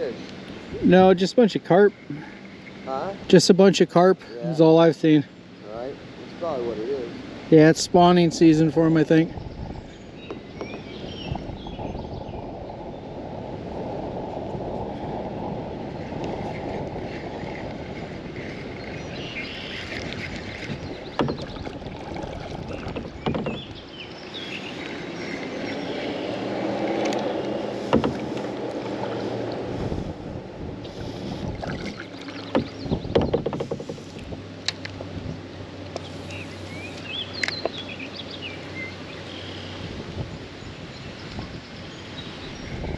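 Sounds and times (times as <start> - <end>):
paddle pulling through water: 0.0 - 42.9
water washing: 12.4 - 37.8
sharp knocks: 20.6 - 23.8, 27.9 - 28.5, 32.4 - 34.0.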